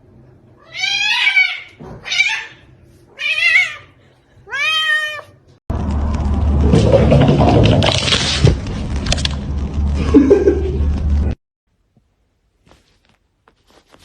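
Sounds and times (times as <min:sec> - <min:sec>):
cat meowing: 0:00.6 - 0:05.4.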